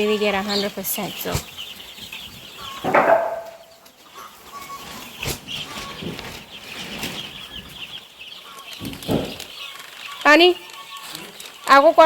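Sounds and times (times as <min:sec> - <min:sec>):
chicks peeping: 0:00.0 - 0:12.0
sharp knock: 0:02.8 - 0:03.6.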